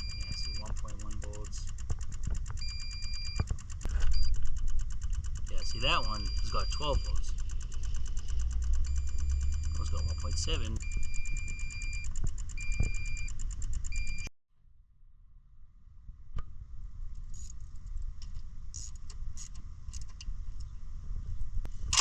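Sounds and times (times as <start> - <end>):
electronic warning chime beeping: 0.0 - 1.6, 2.6 - 3.4, 4.1 - 4.4, 5.5 - 7.4, 8.2 - 13.3.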